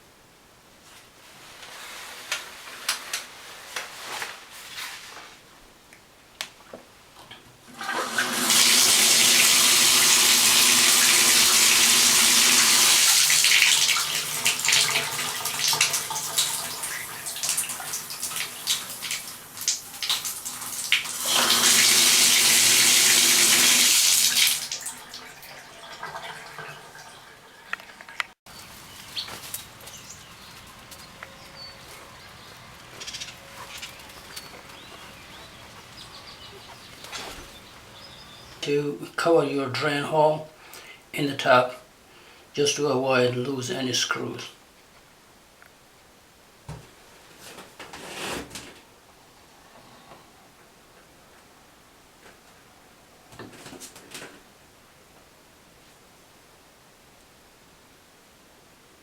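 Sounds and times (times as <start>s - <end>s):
shower water spraying: 7.8s - 25.4s.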